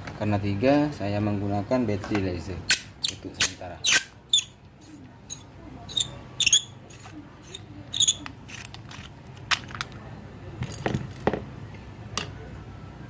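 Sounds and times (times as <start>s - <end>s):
plastic and metal parts clicking: 7.0s - 10.0s.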